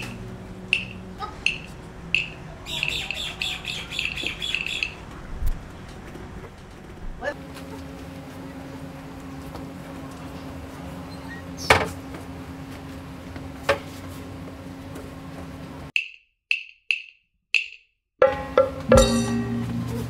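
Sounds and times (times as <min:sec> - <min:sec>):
steady background hum: 0:00.0 - 0:15.9.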